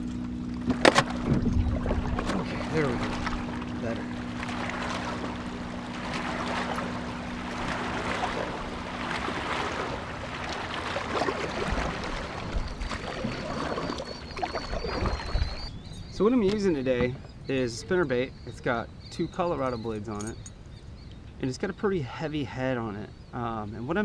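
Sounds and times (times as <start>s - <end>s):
waves splashing against hull: 0.0s - 15.8s
boat motor hum: 0.0s - 24.0s.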